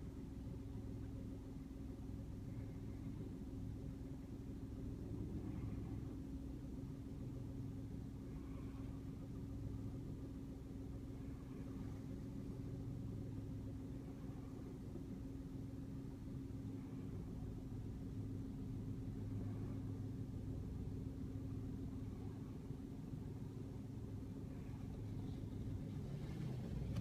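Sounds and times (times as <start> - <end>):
car engine idling: 18.0 - 27.0.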